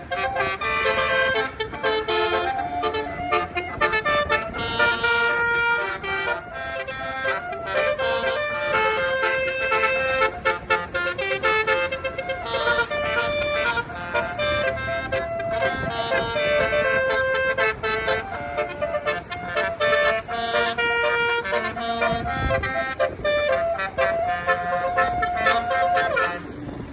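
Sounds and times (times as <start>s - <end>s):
multi-note bus air horn tune: 0.0s - 26.9s.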